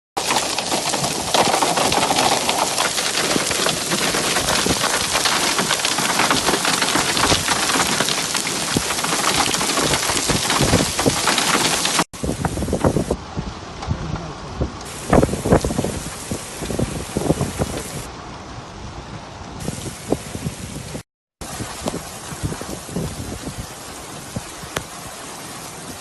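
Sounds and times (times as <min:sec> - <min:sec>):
heavy hail on hard surfaces: 0:00.2 - 0:13.2, 0:14.8 - 0:18.1.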